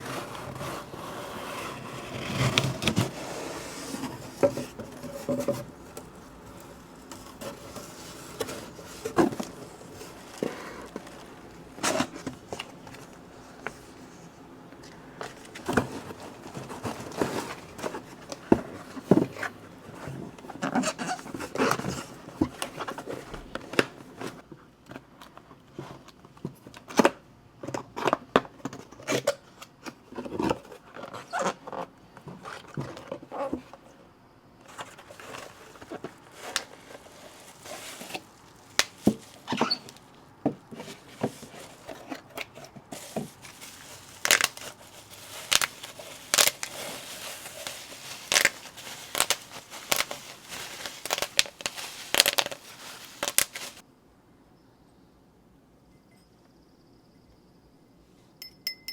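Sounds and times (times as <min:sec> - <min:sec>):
cardboard and packaging crinkling: 0:00.0 - 0:27.1, 0:34.6 - 0:53.9.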